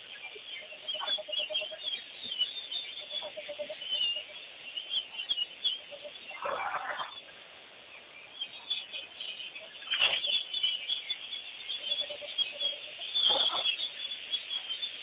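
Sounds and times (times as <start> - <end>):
birds chirping: 0.0 - 15.0
loud short bird calls: 11.8 - 14.0.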